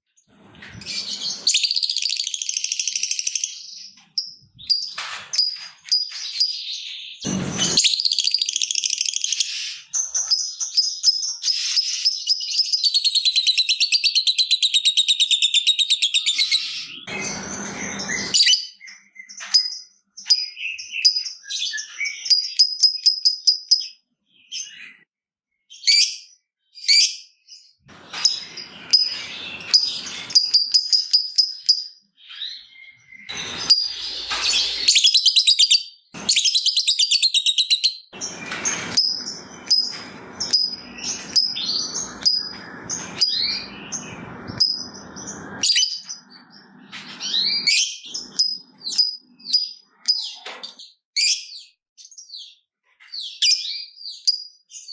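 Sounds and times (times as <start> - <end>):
lovebird chattering chirps: 33.3 - 49.7.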